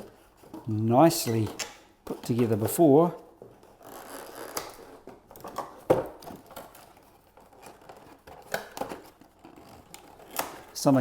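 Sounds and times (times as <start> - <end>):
cardboard rustling and scraping: 0.0 - 11.0.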